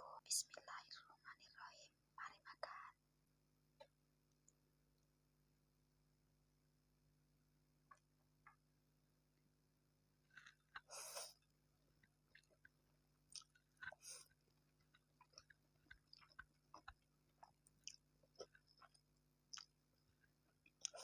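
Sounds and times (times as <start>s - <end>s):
person chewing: 10.3s - 21.0s.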